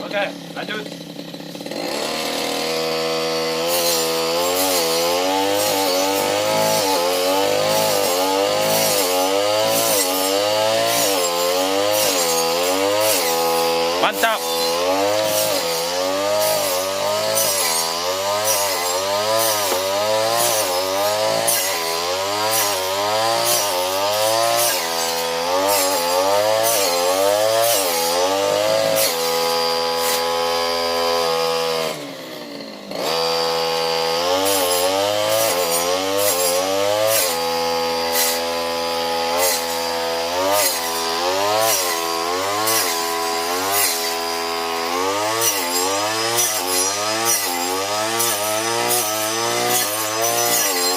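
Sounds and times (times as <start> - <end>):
brush cutter engine revving: 0.0 - 50.9
blade ticking through plants: 1.6 - 30.3.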